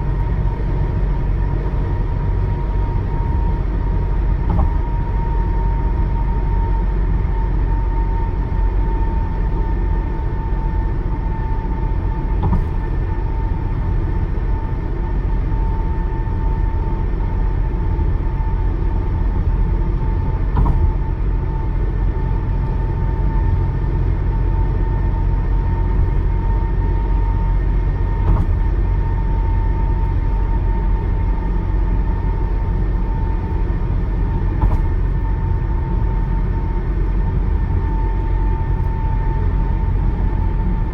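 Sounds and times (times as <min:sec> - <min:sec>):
high tire whine: 0:00.0 - 0:40.9
tires rumbling on concrete: 0:00.0 - 0:40.9
brief knocks: 0:04.4 - 0:05.0, 0:12.4 - 0:13.0, 0:20.5 - 0:21.0, 0:28.2 - 0:28.8, 0:34.6 - 0:35.3.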